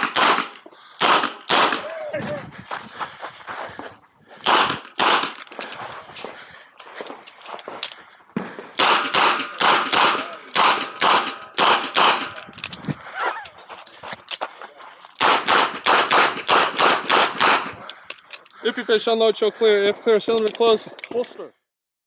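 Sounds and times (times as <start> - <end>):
revolver gunshots: 0.0 - 1.9, 4.4 - 5.4, 8.6 - 12.5, 15.2 - 17.8.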